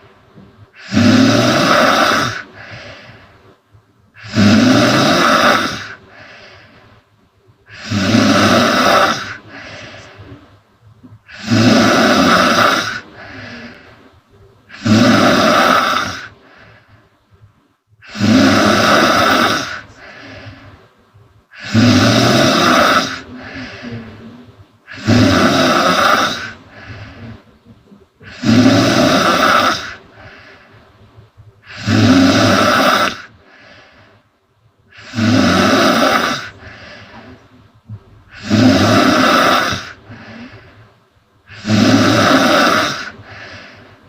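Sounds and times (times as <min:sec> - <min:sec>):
woman snoring loudly: 0:00.8 - 0:02.7, 0:04.2 - 0:06.2, 0:07.7 - 0:10.0, 0:11.3 - 0:13.9, 0:14.7 - 0:16.6, 0:18.0 - 0:20.4, 0:21.6 - 0:24.2, 0:24.9 - 0:27.4, 0:28.2 - 0:30.3, 0:31.6 - 0:33.3, 0:34.9 - 0:37.4, 0:38.3 - 0:40.6, 0:41.5 - 0:43.9.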